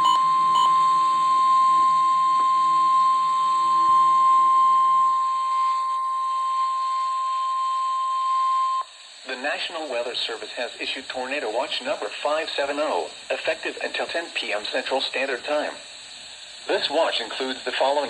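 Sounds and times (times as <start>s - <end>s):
high-pitched alarm tone: 0.0s - 8.9s.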